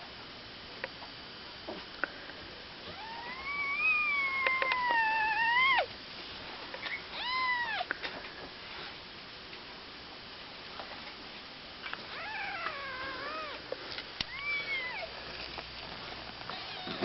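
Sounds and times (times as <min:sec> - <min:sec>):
kitten mewing: 0:02.8 - 0:05.9, 0:06.9 - 0:07.9, 0:12.2 - 0:13.6, 0:14.3 - 0:15.1.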